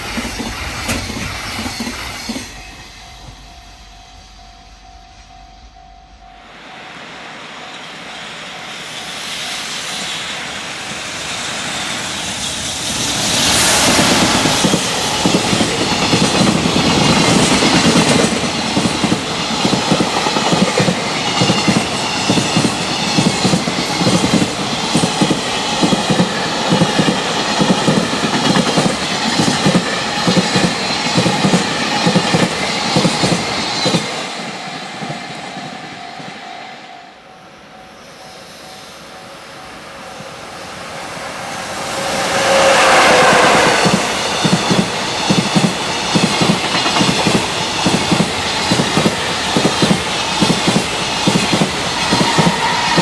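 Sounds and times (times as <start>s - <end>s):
electric train passing at high speed: 0.0s - 53.0s
train wheels clattering over rail joints: 43.8s - 53.0s.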